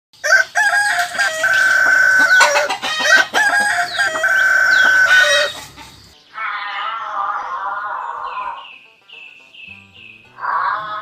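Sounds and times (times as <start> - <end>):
rooster crowing: 0.2 - 5.6.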